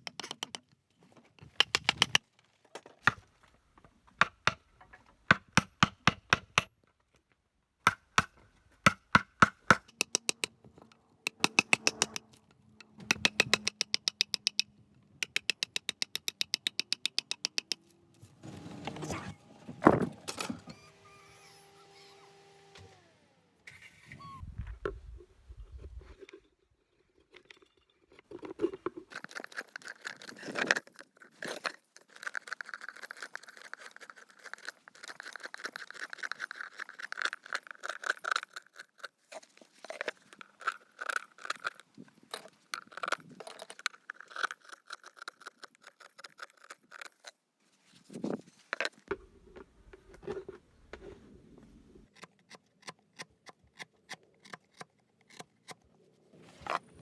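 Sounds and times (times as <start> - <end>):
hand tool scraping wood: 9.8 - 14.6
quick regular ticks: 11.3 - 17.9, 32.1 - 39.2.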